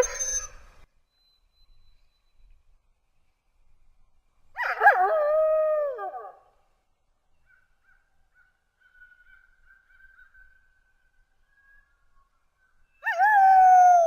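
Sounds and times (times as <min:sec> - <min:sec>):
wolf howling: 0:13.0 - 0:14.0.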